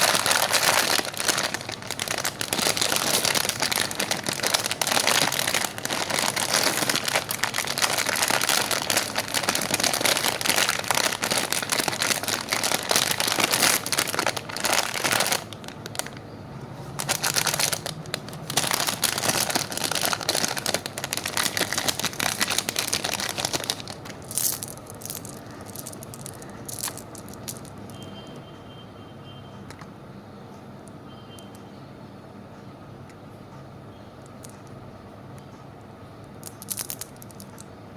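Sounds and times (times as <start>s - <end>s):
plastic wrappers crinkling: 0.0s - 16.2s, 16.9s - 27.8s, 36.5s - 37.6s.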